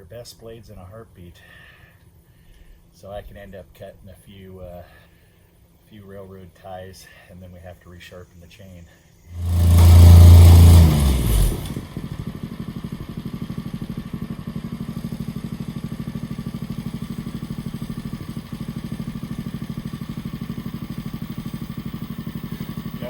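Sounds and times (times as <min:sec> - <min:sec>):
chainsaw engine revving and idling: 0:09.3 - 0:23.0.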